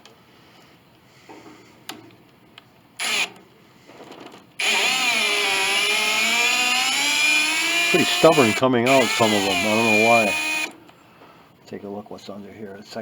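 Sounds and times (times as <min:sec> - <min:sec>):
loud steady whine: 0:04.6 - 0:10.7.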